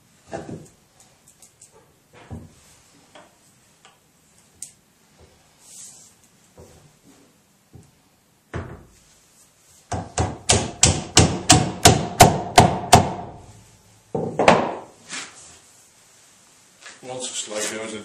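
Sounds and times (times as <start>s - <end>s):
hammer driving wooden peg: 9.9s - 13.4s, 14.1s - 14.9s.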